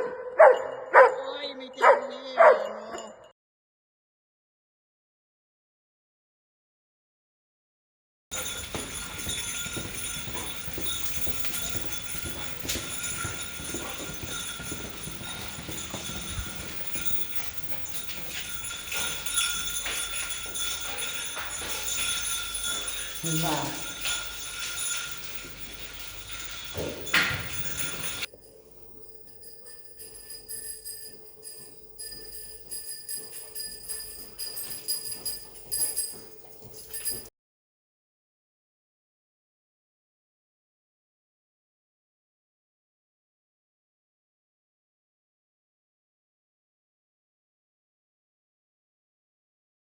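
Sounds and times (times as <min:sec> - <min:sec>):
light jingling: 0:00.0 - 0:03.3, 0:08.3 - 0:37.3
dog claws clicking on floor: 0:08.3 - 0:28.3.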